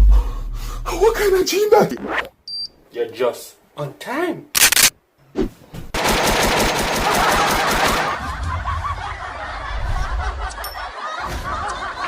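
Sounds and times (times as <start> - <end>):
rapid machine-gun shots: 6.0 - 8.2
snickering laughter: 7.0 - 12.0.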